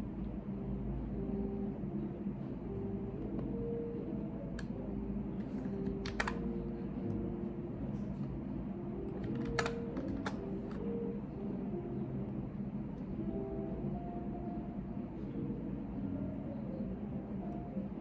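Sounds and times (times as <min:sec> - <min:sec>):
low room hum: 0:00.0 - 0:18.0
keyboard keystrokes: 0:05.4 - 0:06.5, 0:09.1 - 0:10.9.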